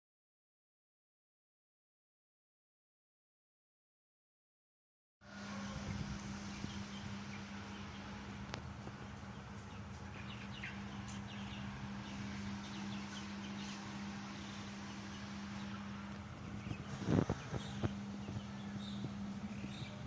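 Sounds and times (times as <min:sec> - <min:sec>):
steady low hum: 0:05.3 - 0:20.0
chicks peeping and clucking: 0:05.4 - 0:20.0.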